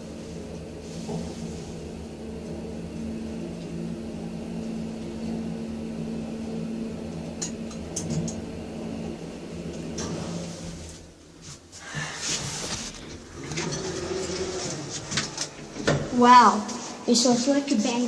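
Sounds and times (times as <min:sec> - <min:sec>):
elevator machine hum: 0:00.0 - 0:18.0.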